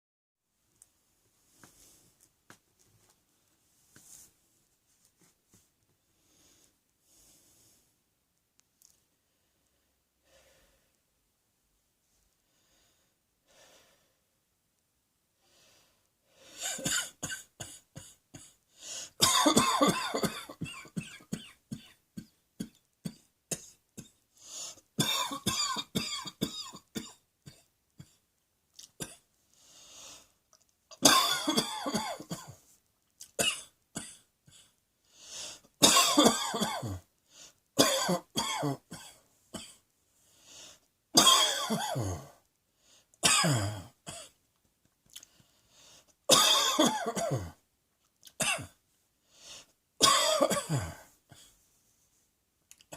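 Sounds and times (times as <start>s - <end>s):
person coughing: 16.6s - 18.6s, 19.2s - 24.1s, 25.0s - 28.2s, 30.9s - 32.6s, 35.8s - 37.1s, 37.8s - 39.8s, 41.2s - 42.4s, 43.2s - 44.4s, 46.3s - 47.6s, 48.4s - 48.8s, 50.0s - 51.5s.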